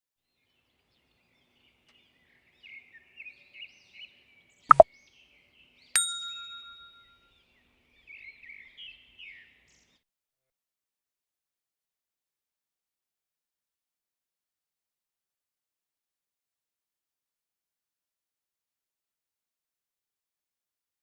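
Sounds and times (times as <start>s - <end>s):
small birds chirping: 0.4s - 10.0s
bell-like ding: 6.0s - 7.2s.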